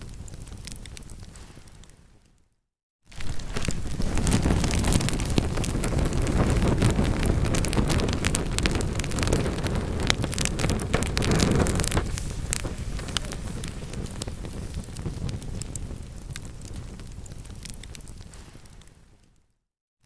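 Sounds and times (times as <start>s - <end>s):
wood fire crackling and popping: 0.0s - 2.0s, 3.1s - 19.3s
fire flame rumble: 3.1s - 19.0s.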